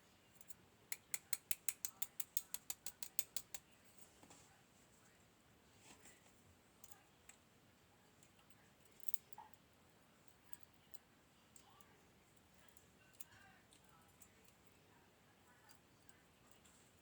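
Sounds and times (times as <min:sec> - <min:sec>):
small metal parts clicking: 0:09.0 - 0:09.3.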